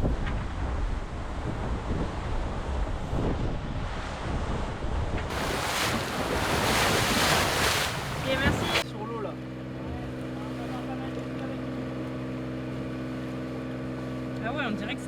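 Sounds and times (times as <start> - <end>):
wind buffeting microphone: 1.5 - 8.8
hissing rush of water and spray: 5.3 - 8.8
water rushing along hull: 5.3 - 8.8.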